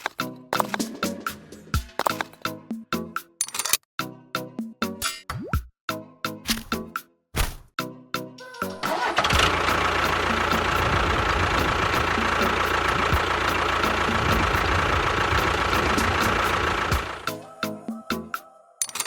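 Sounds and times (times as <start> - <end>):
engine idling: 8.8 - 17.4.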